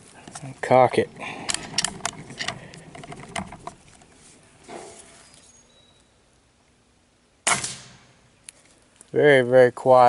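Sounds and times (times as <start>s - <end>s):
air rifle shot: 7.4s - 8.2s.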